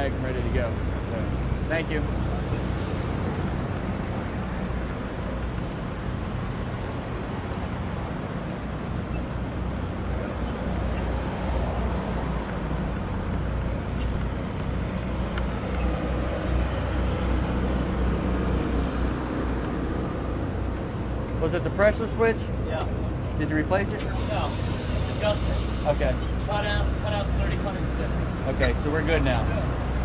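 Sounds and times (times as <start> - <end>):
broad rushing noise: 0.3 - 30.0.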